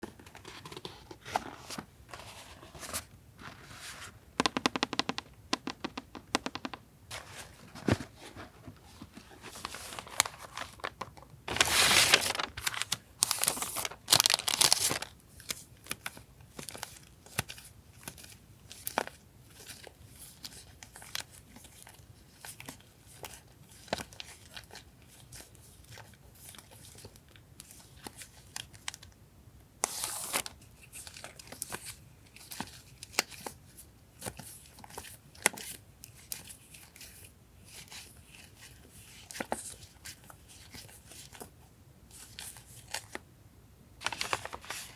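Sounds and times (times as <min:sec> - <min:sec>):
small taps: 0:04.4 - 0:06.8
paper crinkling: 0:07.1 - 0:15.2, 0:44.0 - 0:44.9
paper tearing: 0:11.5 - 0:15.0.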